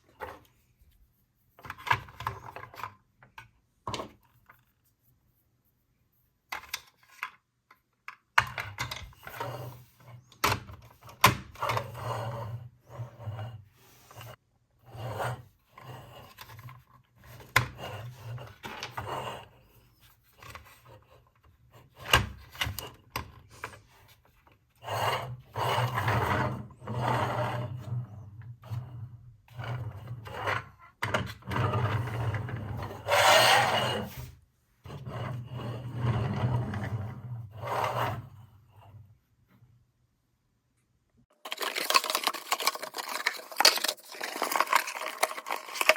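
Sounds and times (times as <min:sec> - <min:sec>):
hands rubbing and scraping toys: 0:00.0 - 0:12.0, 0:12.7 - 0:14.4, 0:41.3 - 0:45.9.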